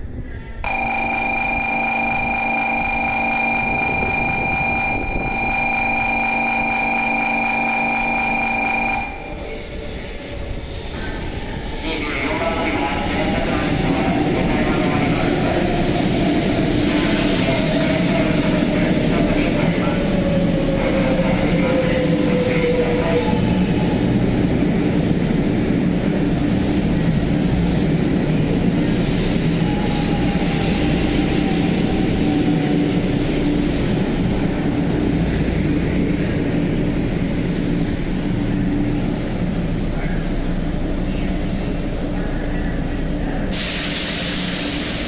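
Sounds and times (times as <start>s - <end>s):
train running with electric hum: 0.0s - 45.0s
sharp hiss: 43.4s - 45.0s.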